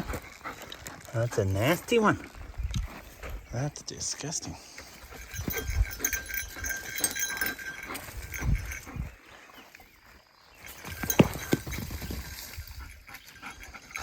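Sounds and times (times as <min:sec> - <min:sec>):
small bell jingling: 0:04.8 - 0:09.3, 0:10.5 - 0:14.0
thumps and scuffling: 0:10.7 - 0:12.4.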